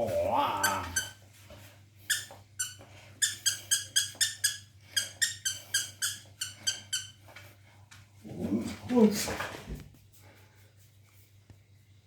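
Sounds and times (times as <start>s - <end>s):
squeaky toy squeaking: 2.1s - 7.2s.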